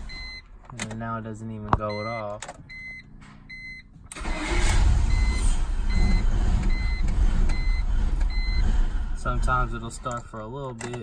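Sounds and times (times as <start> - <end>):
car engine starting and idling roughly: 4.1 - 11.0.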